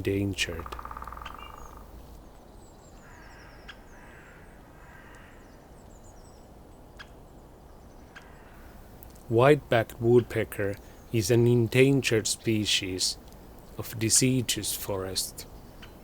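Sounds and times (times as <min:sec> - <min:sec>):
small birds high-pitched calls: 0:00.3 - 0:08.8, 0:13.7 - 0:16.0
sharp ticks: 0:00.5 - 0:01.9.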